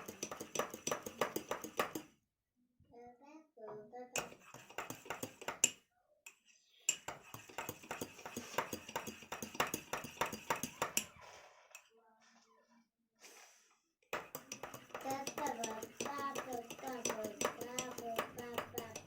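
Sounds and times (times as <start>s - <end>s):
spoon clinking in a cup: 6.9s - 11.2s, 14.2s - 19.0s.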